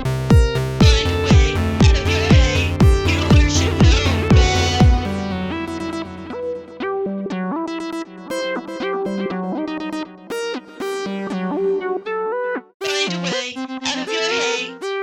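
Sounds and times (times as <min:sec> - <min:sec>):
bass line: 0:00.0 - 0:06.8
keyboard chords: 0:00.0 - 0:15.0.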